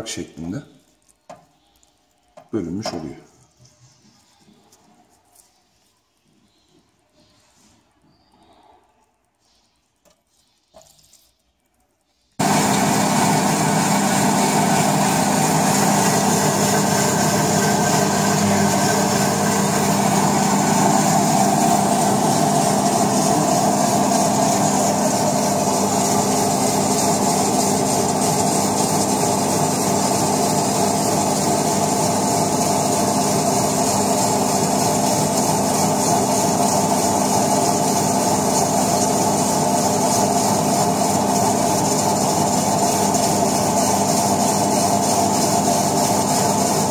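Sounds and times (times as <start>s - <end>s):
chopping machine mechanical hum: 12.4s - 46.9s.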